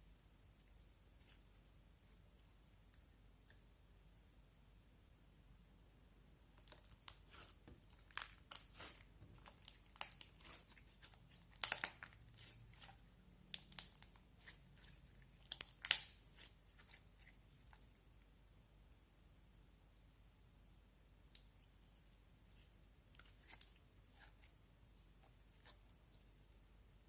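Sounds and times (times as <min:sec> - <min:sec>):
slime squished by hand: 0:06.6 - 0:17.3.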